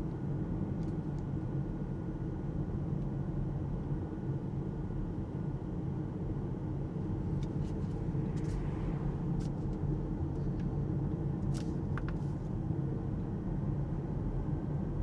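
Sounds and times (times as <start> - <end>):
tyre and road noise in car: 6.8 - 12.8.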